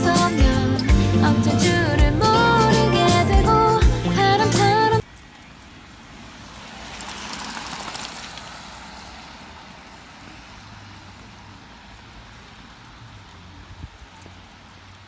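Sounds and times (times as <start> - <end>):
outdoor background noise: 0.0 - 15.0
car tyres hissing on wet road: 4.3 - 15.0.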